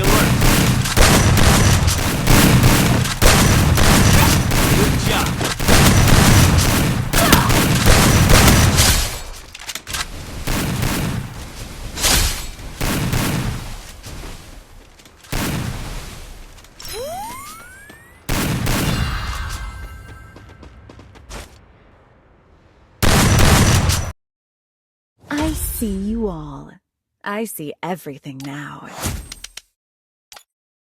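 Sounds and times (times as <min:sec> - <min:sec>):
loud blast: 0:00.0 - 0:09.2
video game gunfire: 0:00.0 - 0:09.5, 0:10.1 - 0:13.9, 0:15.3 - 0:16.1, 0:17.3 - 0:19.8, 0:23.0 - 0:24.1.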